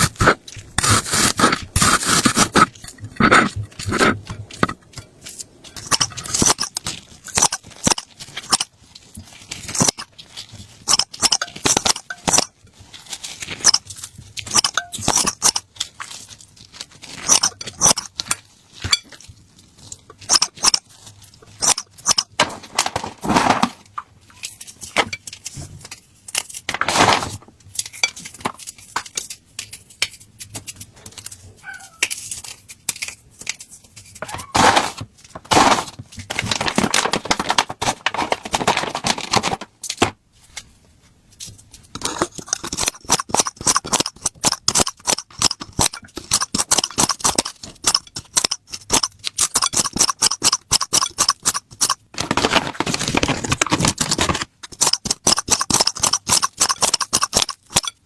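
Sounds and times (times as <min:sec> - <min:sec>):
utensils and dishes clinking: 0:00.0 - 0:08.7, 0:10.7 - 0:12.6, 0:13.4 - 0:15.7, 0:17.1 - 0:19.3, 0:20.2 - 0:20.9, 0:21.5 - 0:22.4, 0:42.0 - 0:58.0.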